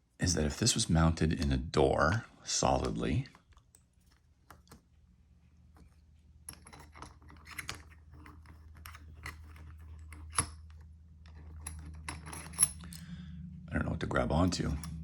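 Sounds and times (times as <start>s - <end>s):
low steady hum: 0.0s - 15.0s
clicks and clinks of lock and tools: 6.4s - 13.0s.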